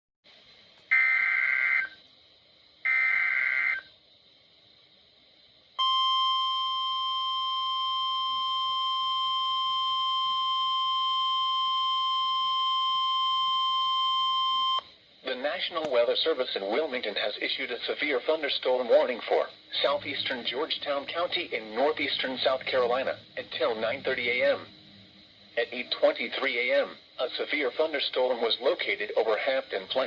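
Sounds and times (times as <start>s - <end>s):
digital data tone screech: 0.9s - 2.0s, 2.9s - 3.9s
steady attention tone: 5.8s - 14.9s, 18.9s - 28.0s.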